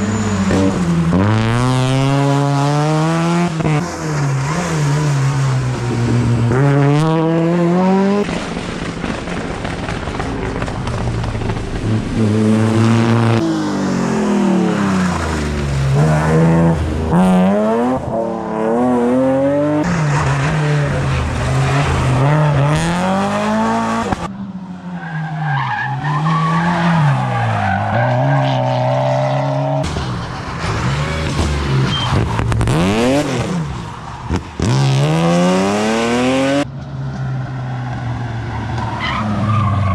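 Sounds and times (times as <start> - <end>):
rally car engines revving: 0.0 - 39.9
tyre squeal: 31.0 - 32.4.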